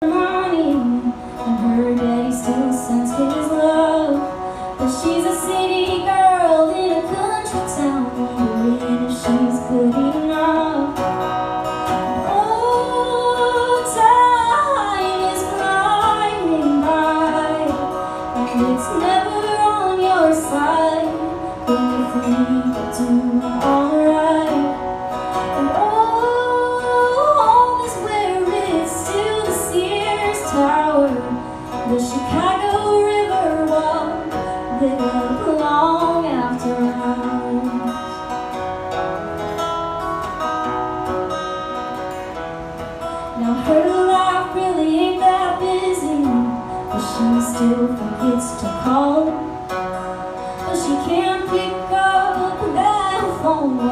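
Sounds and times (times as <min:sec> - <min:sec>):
woman singing: 0:00.0 - 0:38.4, 0:43.2 - 0:53.9
acoustic guitar: 0:00.0 - 0:53.9.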